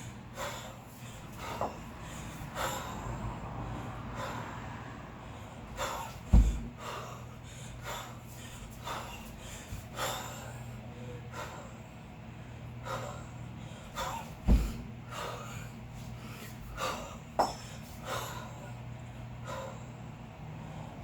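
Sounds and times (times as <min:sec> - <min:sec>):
person breathing hard: 0:00.0 - 0:21.0
heavy thump: 0:06.2 - 0:06.8, 0:14.4 - 0:15.0.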